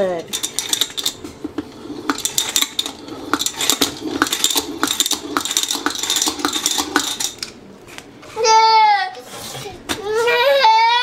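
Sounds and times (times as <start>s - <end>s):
small hard objects clinking: 2.0s - 7.5s.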